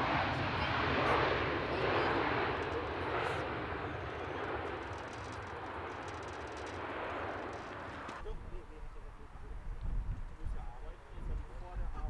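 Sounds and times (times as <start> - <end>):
jet engine roar: 0.0 - 8.2.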